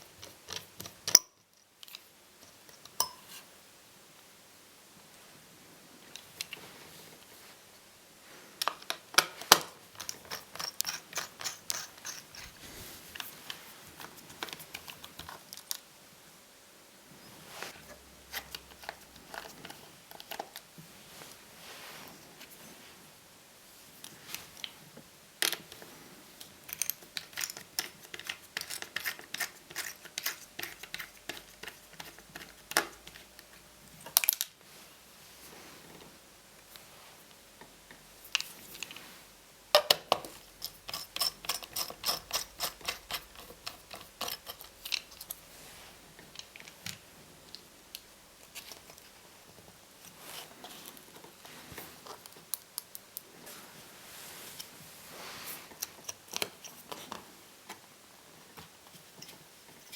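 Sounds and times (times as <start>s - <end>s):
small clicks and scrapes from tools: 0.1s - 3.4s, 8.6s - 15.8s, 17.5s - 20.7s, 25.4s - 34.6s, 40.1s - 53.6s, 55.4s - 57.8s.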